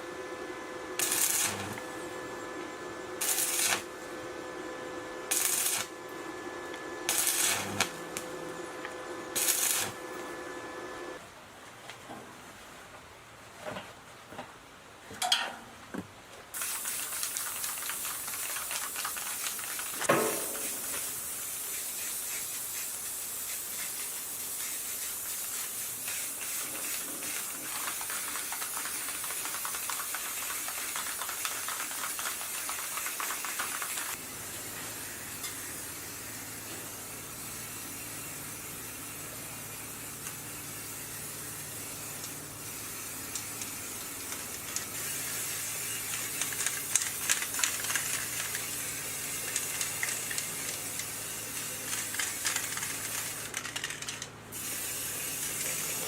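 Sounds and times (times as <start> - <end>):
steady air hiss: 16.5 - 53.5, 54.6 - 56.0.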